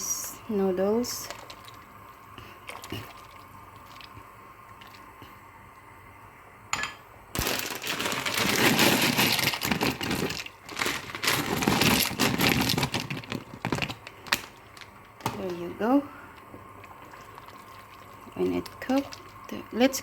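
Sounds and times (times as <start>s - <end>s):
plastic packet crinkling: 7.4s - 15.2s.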